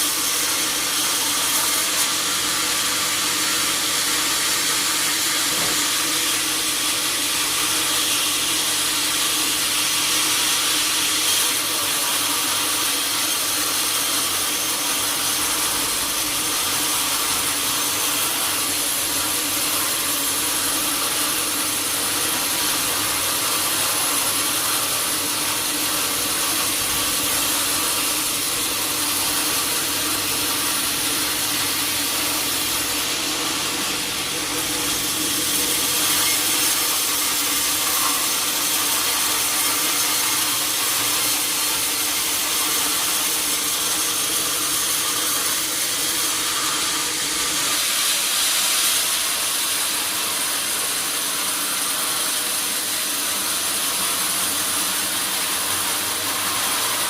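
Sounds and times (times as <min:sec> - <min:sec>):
saw cutting a log: 0:00.0 - 0:57.0.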